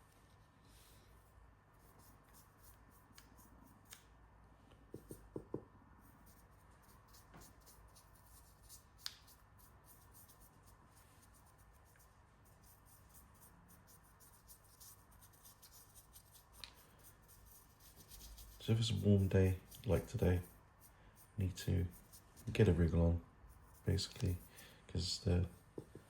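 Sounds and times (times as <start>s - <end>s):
paintbrush scratching: 1.2s - 4.0s, 5.0s - 25.9s.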